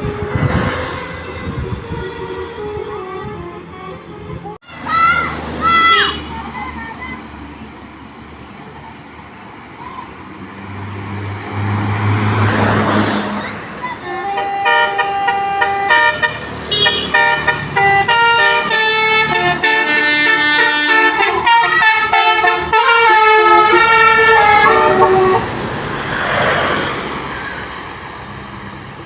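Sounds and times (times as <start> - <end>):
musical vehicle horn tune: 0.0 - 4.6, 14.0 - 25.6
vehicle rushing past: 10.3 - 13.9, 23.9 - 29.0.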